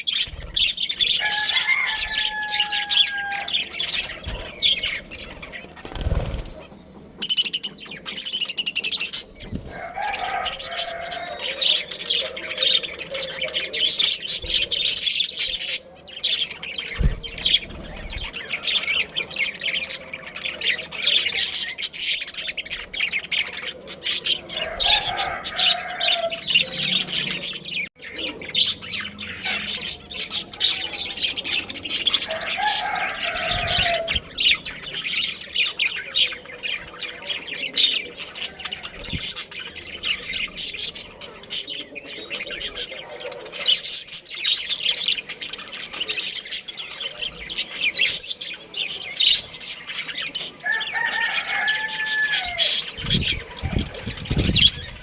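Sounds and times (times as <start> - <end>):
budgerigars chirping: 0.0 - 55.0.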